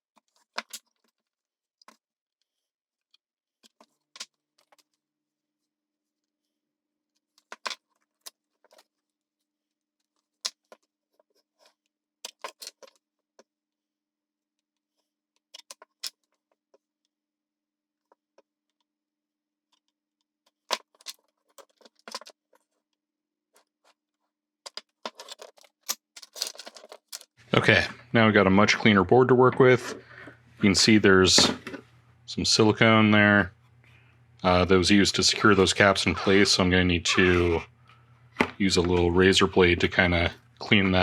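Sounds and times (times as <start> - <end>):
faint hum: 27.4 - 41.0
hand tools clicking and scraping: 34.4 - 37.7.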